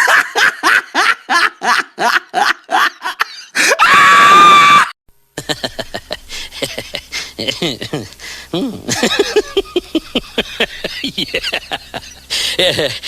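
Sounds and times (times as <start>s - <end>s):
quieter laughter recording: 0.0s - 3.6s, 5.4s - 13.0s
person laughing heartily: 0.0s - 4.6s, 5.4s - 13.0s
high-pitched shriek of laughter: 3.5s - 5.0s
low steady hum: 5.1s - 13.0s.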